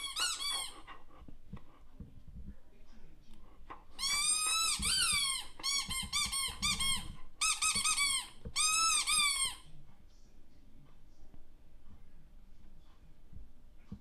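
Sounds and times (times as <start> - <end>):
squeaky toy squeaks: 0.0 - 1.0, 3.9 - 9.7.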